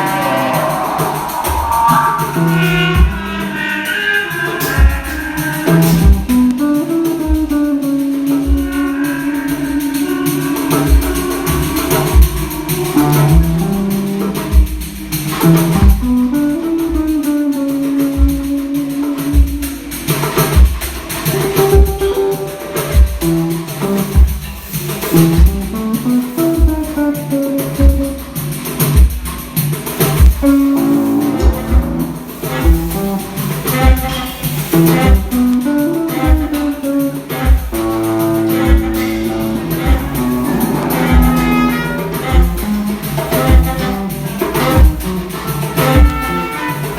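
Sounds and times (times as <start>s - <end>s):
steady drum beat: 0.0s - 46.9s
plucked guitar melody: 4.7s - 12.2s, 21.6s - 24.3s, 34.8s - 45.2s.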